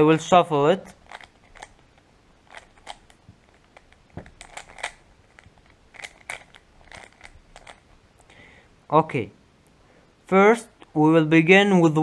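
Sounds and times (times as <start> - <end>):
puzzle cube layers clicking: 0.9 - 7.8.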